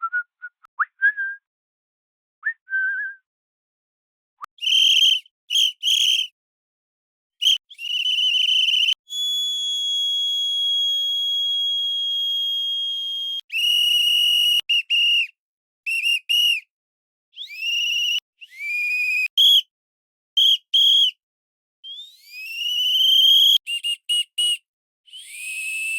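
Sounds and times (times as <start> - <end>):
shrill whistle blasts: 4.5 - 6.4, 7.4 - 16.7, 17.4 - 19.7, 20.4 - 21.2, 21.8 - 25.9.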